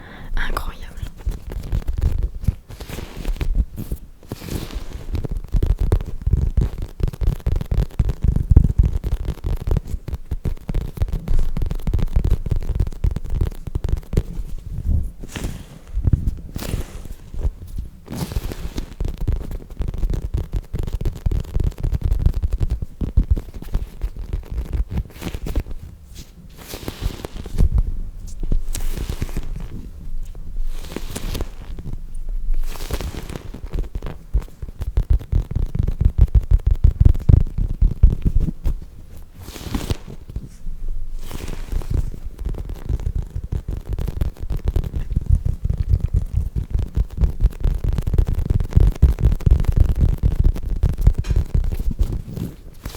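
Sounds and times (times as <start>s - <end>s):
foam toys squeezed crackling: 30.6s - 31.9s.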